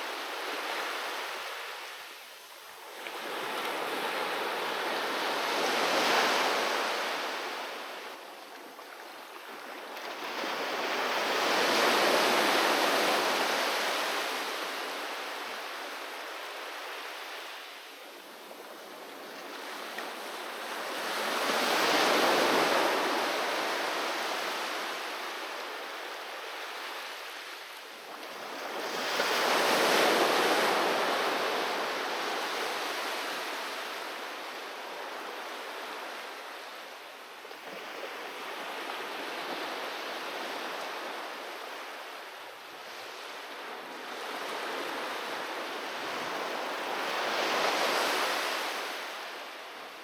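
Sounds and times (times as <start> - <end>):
waves breaking on shore: 0.0 - 50.0.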